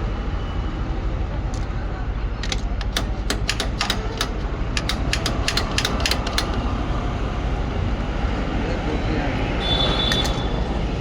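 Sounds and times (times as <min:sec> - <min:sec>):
low traffic rumble: 0:00.0 - 0:11.0
hand tools clicking and tapping: 0:02.4 - 0:06.7.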